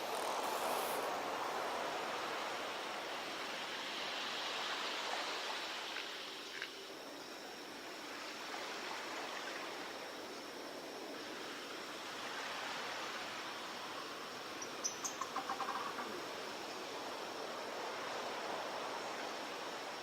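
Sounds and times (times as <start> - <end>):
surf washing on beach: 0.0 - 14.8, 15.8 - 20.0.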